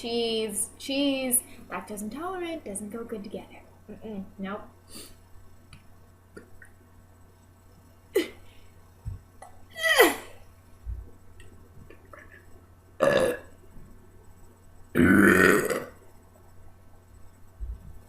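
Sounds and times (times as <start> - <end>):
woman's throat sounds: 15.0 - 16.0.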